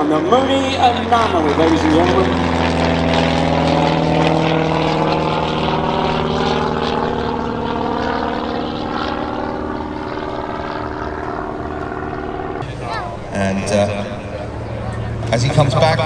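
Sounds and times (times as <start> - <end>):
propeller plane flying past: 0.0 - 16.0.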